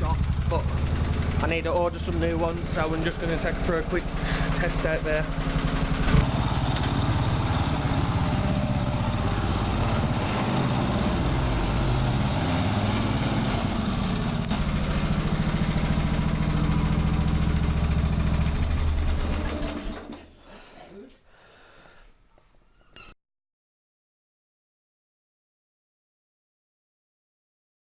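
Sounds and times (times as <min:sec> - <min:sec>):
lawn tractor engine running: 0:00.0 - 0:20.3.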